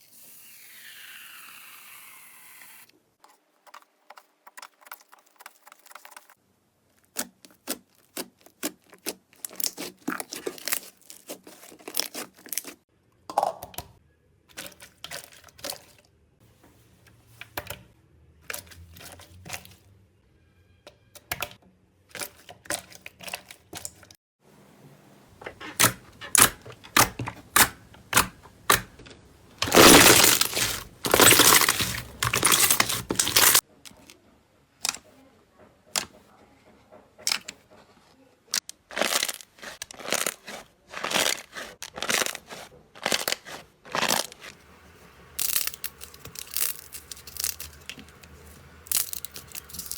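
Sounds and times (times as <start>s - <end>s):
slime popping and crackling: 7.1s - 12.8s, 29.6s - 33.6s, 38.9s - 44.5s, 45.4s - 48.2s, 48.9s - 49.9s.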